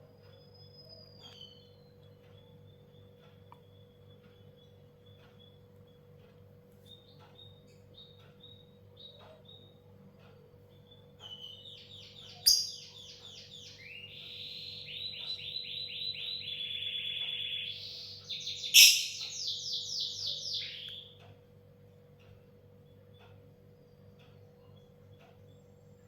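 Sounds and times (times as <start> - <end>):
bird chattering squeaky chirps: 12.2 - 13.1, 18.4 - 20.9.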